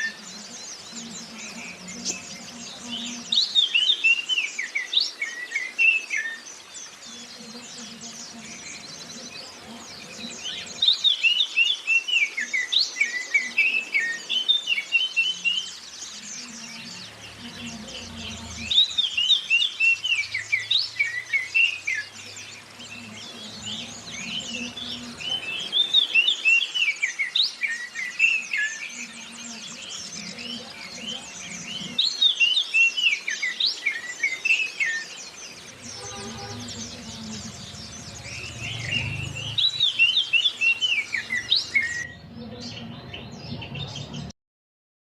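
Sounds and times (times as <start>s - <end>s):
rapid high bird chirps: 0.0s - 42.2s
recorded birdsong: 0.0s - 44.4s.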